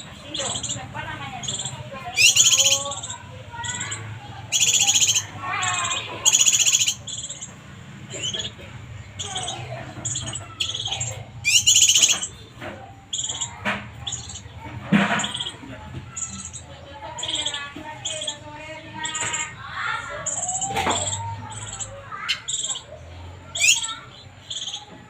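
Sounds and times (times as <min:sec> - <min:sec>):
buzzy bird trills: 0:00.0 - 0:25.0.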